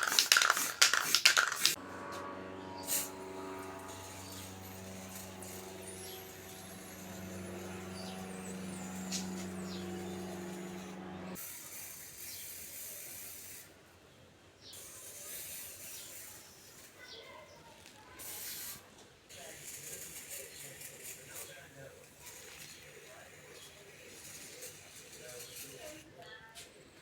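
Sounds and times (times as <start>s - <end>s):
small motor rubbing and rasping: 0.0s - 13.7s, 14.8s - 26.8s.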